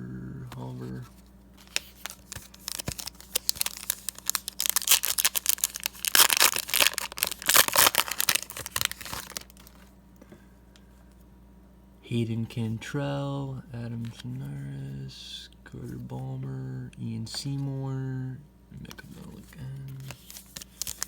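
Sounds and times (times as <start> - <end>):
wrapper tearing and crinkling: 1.6 - 9.8, 20.0 - 21.0.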